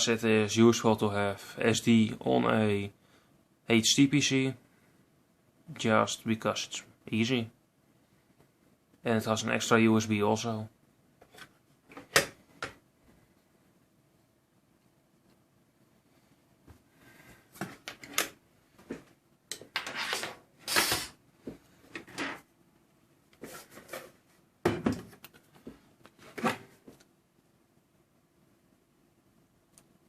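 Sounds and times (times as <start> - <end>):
rustling or scraping: 19.8 - 21.1, 23.4 - 24.5.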